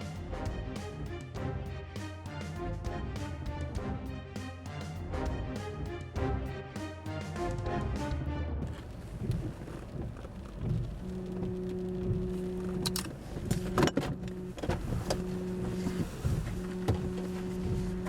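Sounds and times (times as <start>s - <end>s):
pulsing low droning tone: 7.5s - 18.0s
vehicle rumbling on the move: 8.6s - 18.0s.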